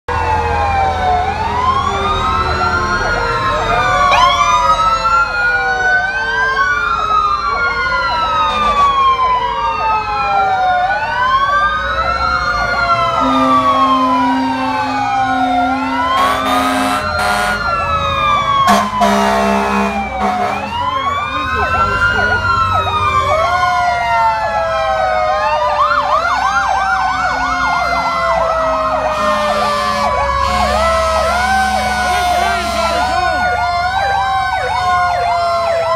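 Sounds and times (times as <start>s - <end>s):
fire engine sirens wailing: 0.1s - 35.9s
low horn blast: 13.2s - 17.7s, 18.6s - 20.8s, 29.0s - 33.4s.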